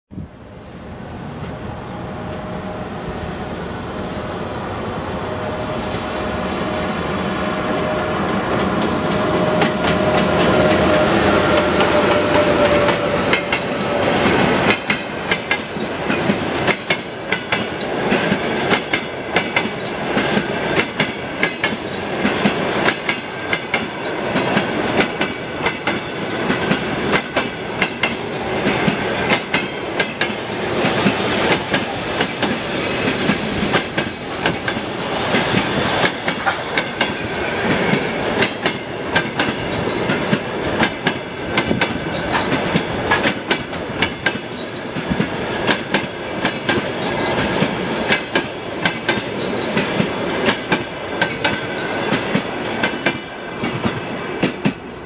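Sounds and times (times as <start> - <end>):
train wheels clattering over rail joints: 8.4 - 54.9
high-pitched wheel squeaks: 24.0 - 24.4, 26.2 - 26.6, 28.2 - 28.9, 32.7 - 33.2, 37.4 - 37.8, 39.7 - 40.2, 41.4 - 42.6, 43.7 - 45.0, 49.4 - 49.9, 51.7 - 52.2.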